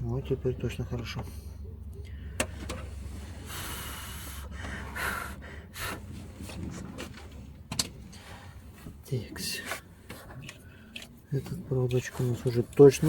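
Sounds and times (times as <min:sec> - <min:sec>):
person breathing close to microphone: 0:02.1 - 0:06.3.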